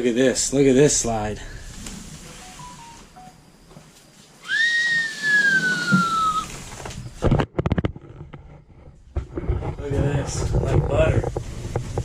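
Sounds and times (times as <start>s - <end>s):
long whistled note gliding down: 4.4s - 6.6s.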